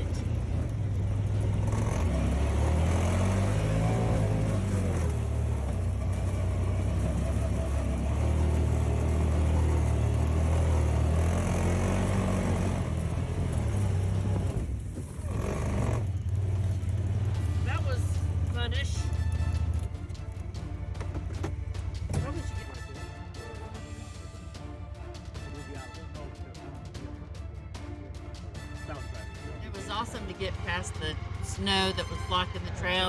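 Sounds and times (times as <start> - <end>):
utv engine revving: 0.0 - 22.6.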